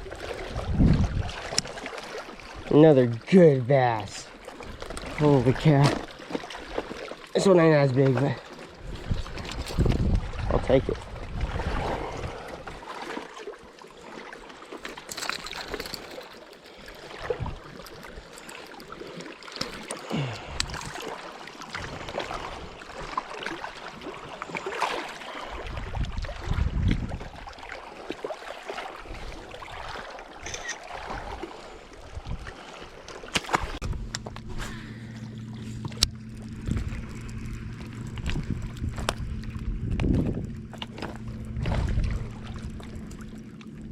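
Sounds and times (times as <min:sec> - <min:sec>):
lake water lapping and splashing: 0:00.0 - 0:43.9
fishing gear clicks and knocks: 0:09.2 - 0:10.1, 0:14.7 - 0:21.1
low rumble: 0:33.8 - 0:43.9.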